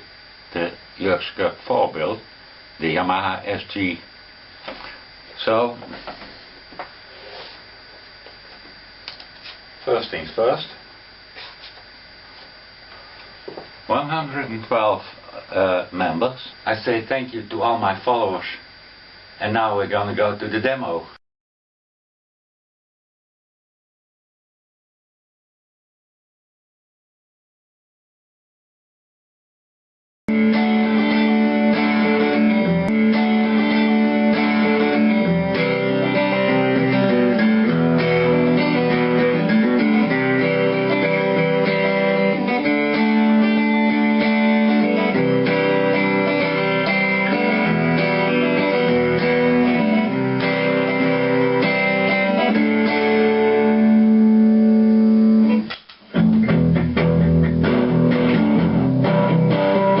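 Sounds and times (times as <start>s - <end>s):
electric guitar chords and picked notes: 30.3s - 60.0s.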